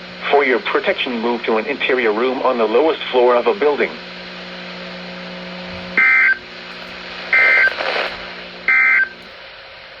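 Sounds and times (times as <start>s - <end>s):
steady low hum: 3.4s - 10.0s
two-tone digital data bursts: 6.0s - 6.4s, 7.3s - 7.8s.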